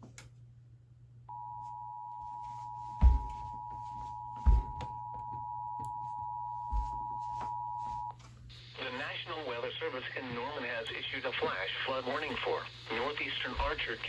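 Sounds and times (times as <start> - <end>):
dual-tone alarm: 1.3 - 8.1.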